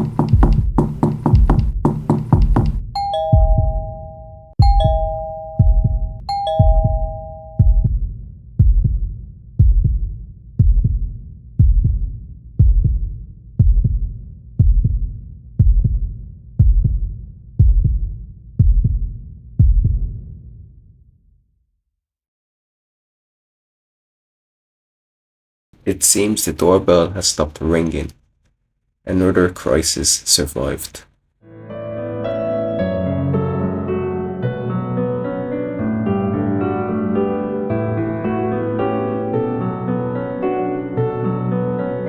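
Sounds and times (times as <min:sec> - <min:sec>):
heartbeat thuds: 0:00.0 - 0:04.0, 0:04.6 - 0:20.2
two-tone doorbell chime: 0:03.0 - 0:07.9.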